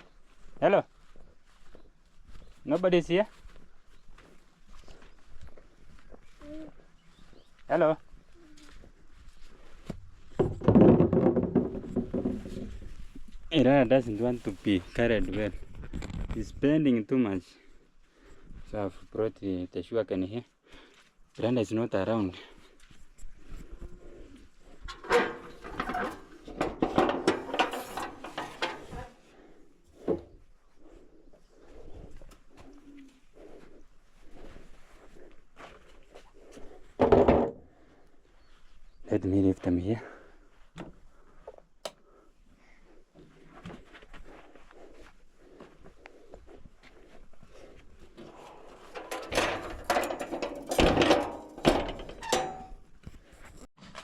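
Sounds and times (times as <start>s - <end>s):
wooden objects clattering: 10.3s - 13.2s, 24.8s - 29.0s, 37.0s - 37.6s, 48.2s - 52.9s.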